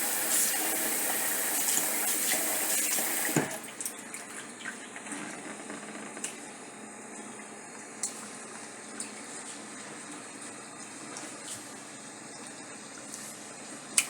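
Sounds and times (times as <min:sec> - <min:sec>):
small water splashes and clicks: 0:08.0 - 0:10.2, 0:10.8 - 0:11.7.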